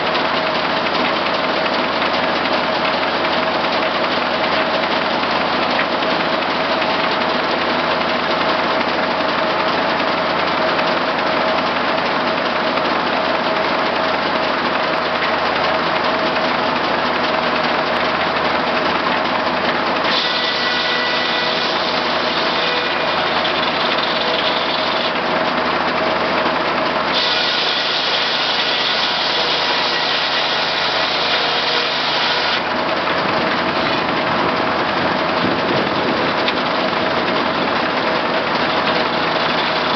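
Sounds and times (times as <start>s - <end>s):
sawmill engine drone: 0.0s - 39.9s
higher-pitched machine sound: 14.1s - 39.9s.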